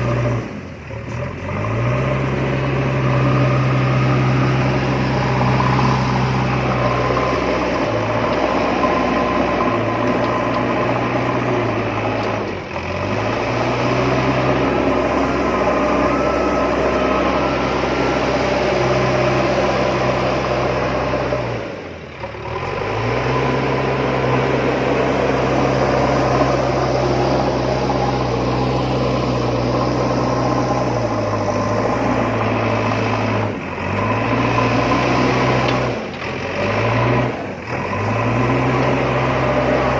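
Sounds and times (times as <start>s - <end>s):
vehicle motor humming: 0.0s - 39.9s.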